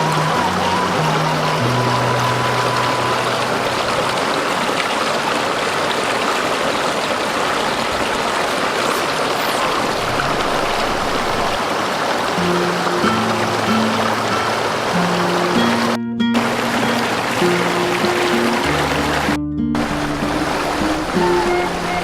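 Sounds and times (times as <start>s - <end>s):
stream water rushing: 0.0s - 22.0s.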